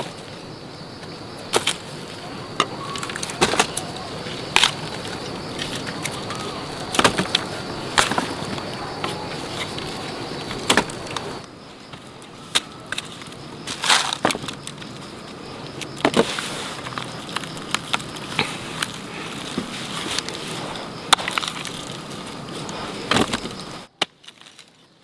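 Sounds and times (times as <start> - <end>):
steady background hiss: 0.0 - 25.0
sharp knocks and cracks: 1.5 - 1.9, 2.6 - 3.9, 4.5 - 14.9, 15.8 - 20.4, 21.1 - 22.0, 23.0 - 24.7.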